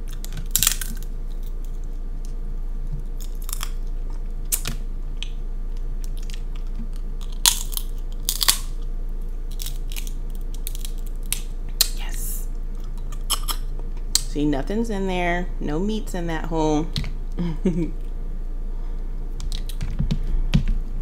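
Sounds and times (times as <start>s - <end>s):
crab shell cracking by hand: 0.0s - 12.0s
low electrical hum: 0.0s - 21.0s.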